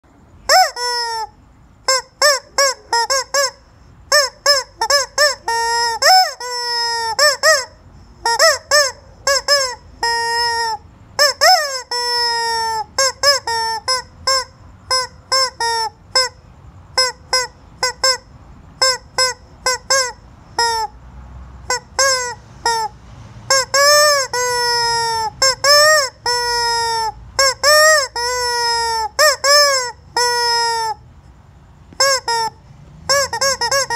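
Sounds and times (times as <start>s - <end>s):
chicken squawking: 0.5s - 16.3s, 23.5s - 31.0s, 32.0s - 33.9s.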